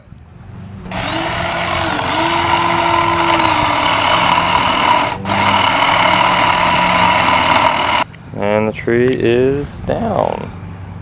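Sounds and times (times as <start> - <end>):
motor whining steadily: 0.9 - 8.1.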